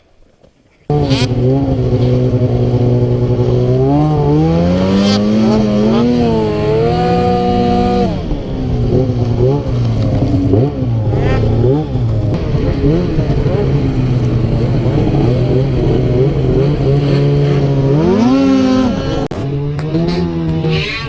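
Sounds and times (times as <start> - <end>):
snowmobile engine revving: 0.9 - 21.0.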